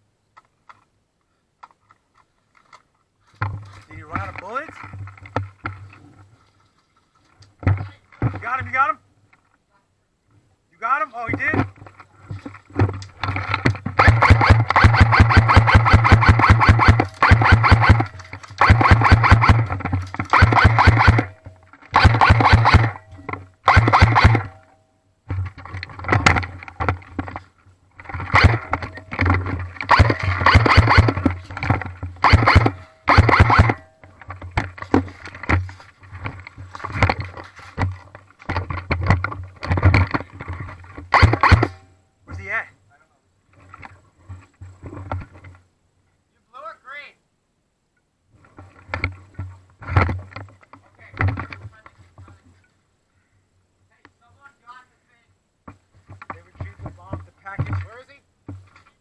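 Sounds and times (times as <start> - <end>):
airsoft guns firing bursts: 13.3 - 23.0, 23.6 - 24.6, 28.0 - 33.8, 41.1 - 41.8.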